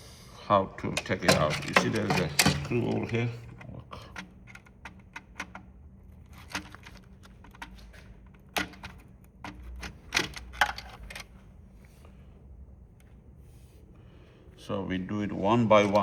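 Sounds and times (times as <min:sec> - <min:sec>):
plastic parts clicking and rattling: 0:00.9 - 0:11.4.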